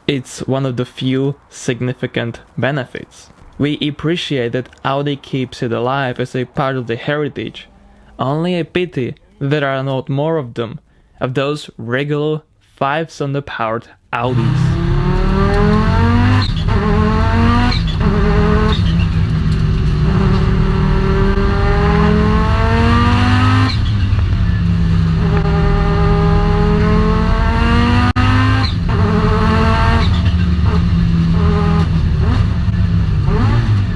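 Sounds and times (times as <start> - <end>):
car engine accelerating: 14.3 - 33.9.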